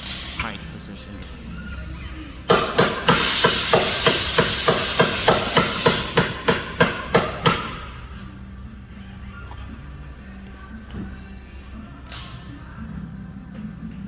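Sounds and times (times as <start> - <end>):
hammer blows on metal: 2.5 - 8.0.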